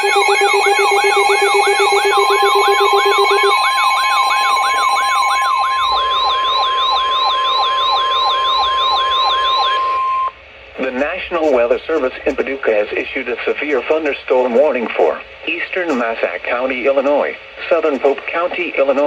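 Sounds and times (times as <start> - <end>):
pulsing low beep: 0.0 - 11.6
electronic siren sweeping: 0.0 - 12.0
steady alarm tone: 0.0 - 18.3.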